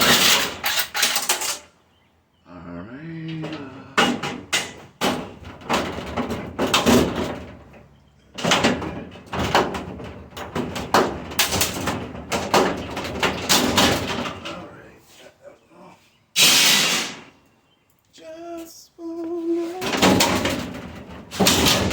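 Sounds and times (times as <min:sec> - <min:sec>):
metal bangs and clatter: 0:00.0 - 0:01.7, 0:04.0 - 0:14.7, 0:19.8 - 0:21.9.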